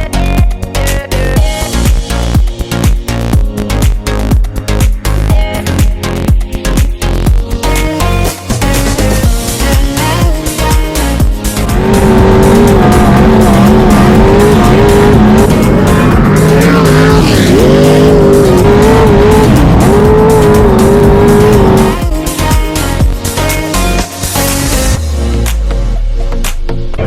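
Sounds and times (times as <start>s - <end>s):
boat engine at high revs: 9.6s - 23.0s.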